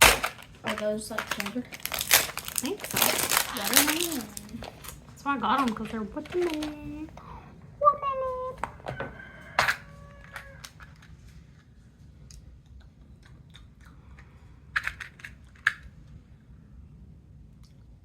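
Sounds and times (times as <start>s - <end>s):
plastic pack crinkling and clicking: 0.0s - 7.2s.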